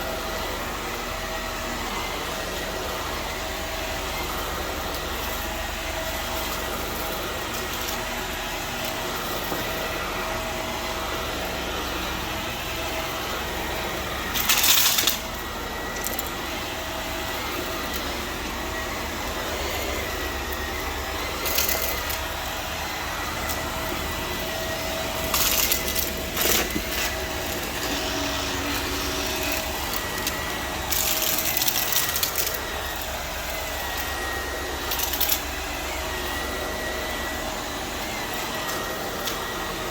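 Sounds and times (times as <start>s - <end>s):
vacuum cleaner running: 0.0s - 39.9s
vacuum suction hissing rushes: 15.4s - 39.9s.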